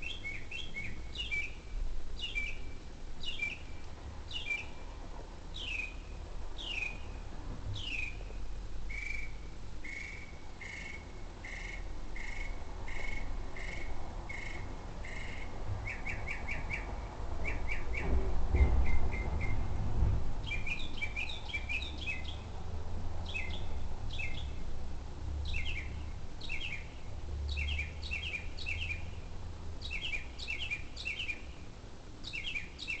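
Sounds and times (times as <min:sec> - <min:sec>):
bird calling: 0:07.8 - 0:19.7, 0:25.5 - 0:29.1, 0:29.8 - 0:31.6, 0:32.2 - 0:33.0.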